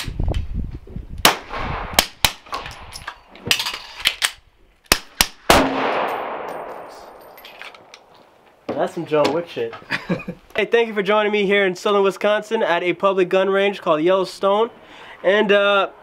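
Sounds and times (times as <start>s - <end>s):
gunshot echo: 4.9s - 7.2s
suppressed pistol shots: 4.9s - 7.2s.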